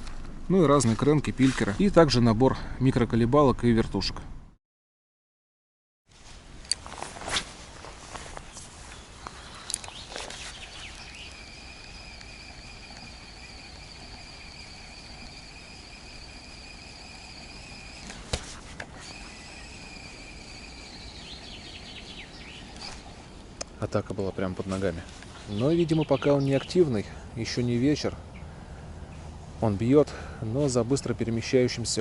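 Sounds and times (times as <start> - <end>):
spinning reel whining: 9.6 - 23.1.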